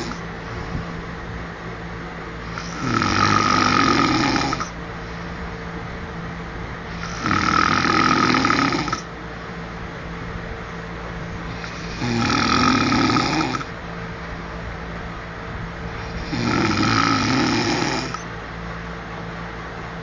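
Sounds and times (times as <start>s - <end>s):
man snoring: 0.0s - 0.2s, 2.4s - 4.8s, 6.9s - 9.1s, 11.5s - 13.7s, 16.0s - 18.3s.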